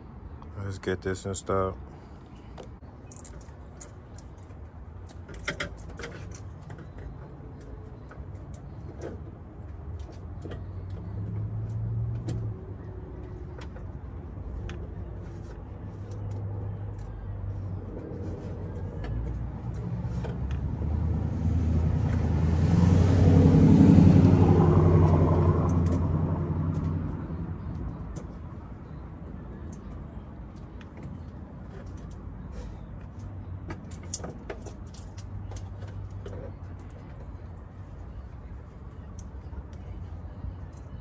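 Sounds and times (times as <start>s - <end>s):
vehicle passing by: 16.2s - 28.8s.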